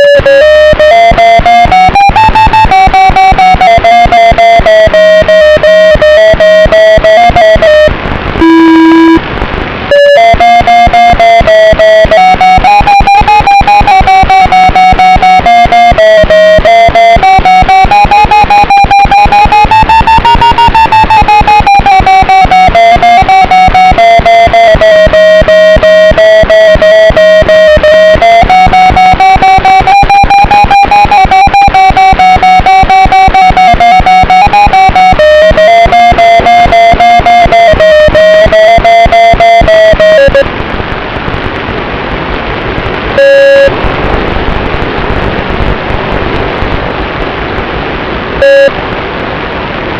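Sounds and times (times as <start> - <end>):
distorted electric guitar music: 0.0 - 49.9.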